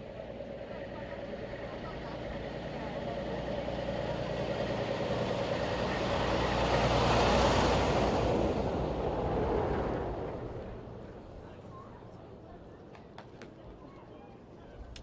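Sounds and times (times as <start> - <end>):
vehicle driving past: 2.5 - 11.2.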